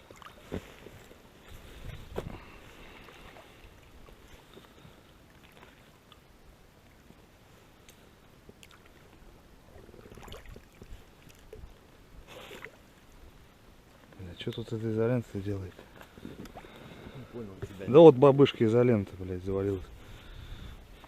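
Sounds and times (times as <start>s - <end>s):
small splashes and drips: 0.0s - 1.2s, 7.9s - 13.2s.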